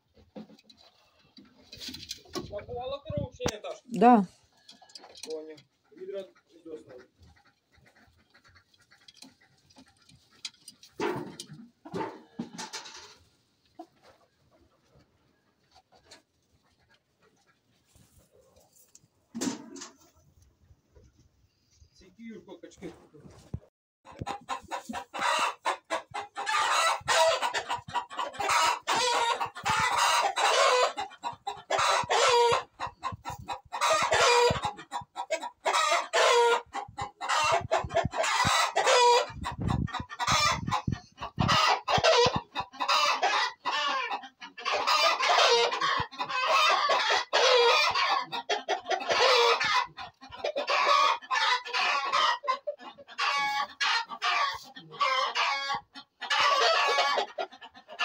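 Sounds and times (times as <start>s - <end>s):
chickens clucking: 0.0s - 58.0s
roosters crowing: 24.9s - 34.8s, 35.4s - 39.4s, 41.4s - 57.4s.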